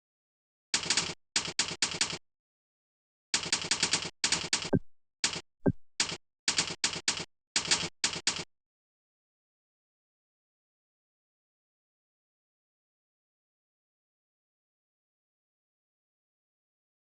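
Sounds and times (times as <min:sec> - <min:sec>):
fast typing on keyboard: 0:00.8 - 0:02.2, 0:03.4 - 0:08.5.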